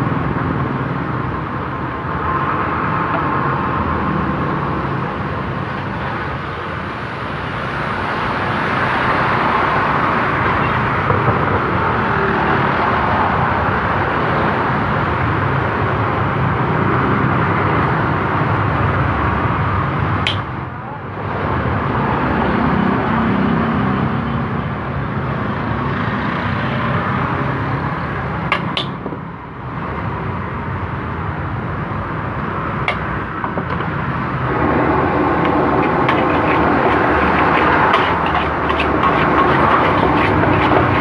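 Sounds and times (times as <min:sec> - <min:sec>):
gas burner and frying roar: 0:32.9 - 0:41.0
metal spatula clinking on wok: 0:35.4 - 0:41.0.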